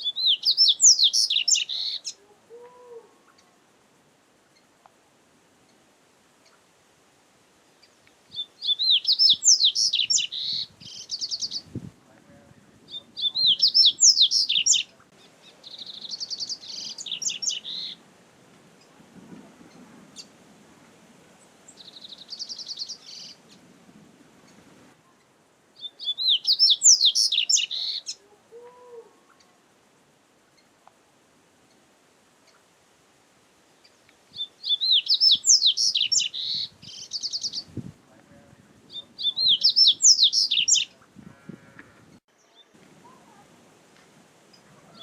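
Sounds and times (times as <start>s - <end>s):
bird singing chirps and trills: 0.0s - 3.5s, 7.8s - 11.8s, 12.9s - 18.0s, 21.7s - 23.6s, 25.1s - 29.5s, 33.8s - 37.7s, 38.9s - 41.0s.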